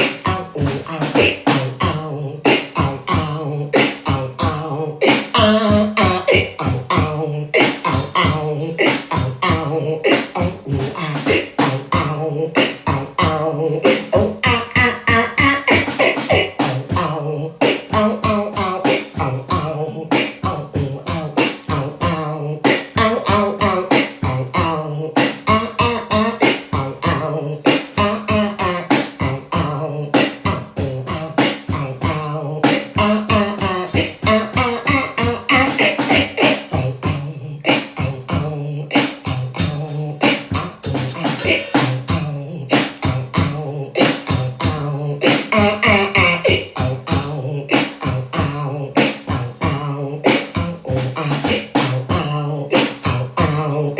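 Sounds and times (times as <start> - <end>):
person beatboxing: 0.0 - 53.9
wavering sung vocal tones: 0.0 - 53.9.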